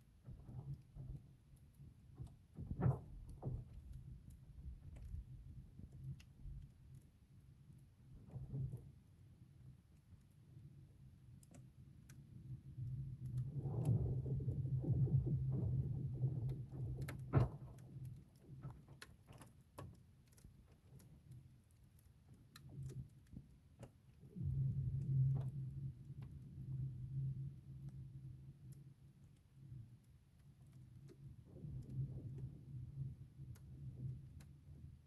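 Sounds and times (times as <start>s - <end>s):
low droning ice groan: 12.8s - 17.7s, 24.3s - 28.7s.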